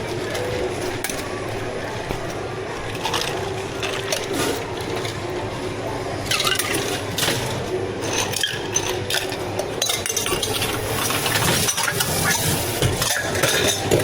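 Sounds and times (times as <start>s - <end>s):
cups and utensils clinking: 6.2s - 14.0s.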